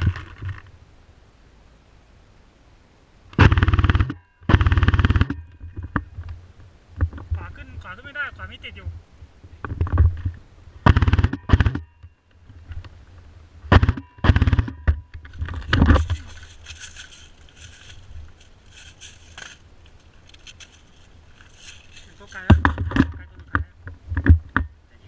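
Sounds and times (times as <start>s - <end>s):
airsoft guns firing bursts: 3.4s - 5.4s, 10.8s - 11.8s, 13.7s - 14.9s.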